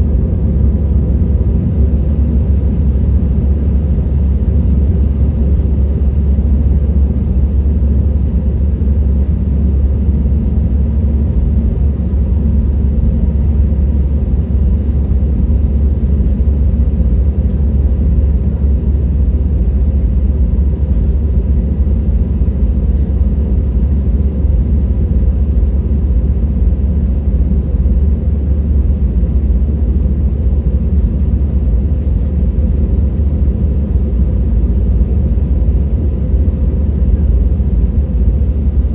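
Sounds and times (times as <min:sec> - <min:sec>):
airliner low rumble: 0:00.0 - 0:38.9.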